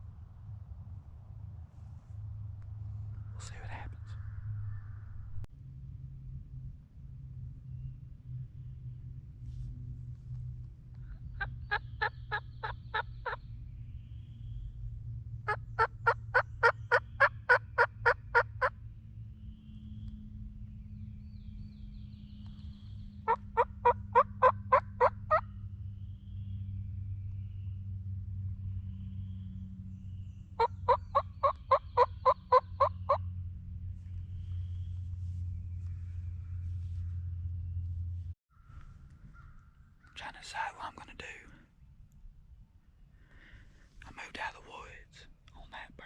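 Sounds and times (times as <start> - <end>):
steady low hum: 0.0 - 46.0
turkey yelping: 11.4 - 13.4, 15.5 - 18.7, 23.3 - 25.4, 30.6 - 33.2.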